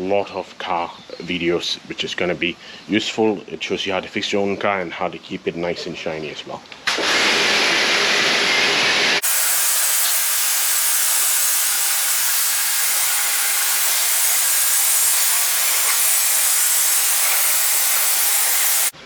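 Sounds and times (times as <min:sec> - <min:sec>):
pressure washer spraying water: 0:06.9 - 0:19.0.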